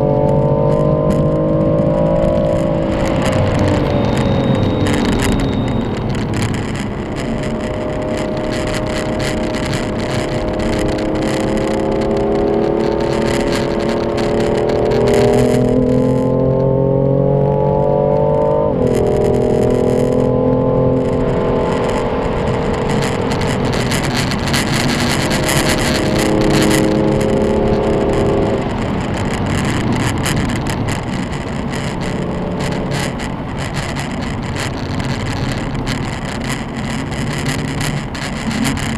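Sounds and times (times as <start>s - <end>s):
car engine under load: 0.0s - 38.9s
wind and road noise: 0.0s - 38.9s.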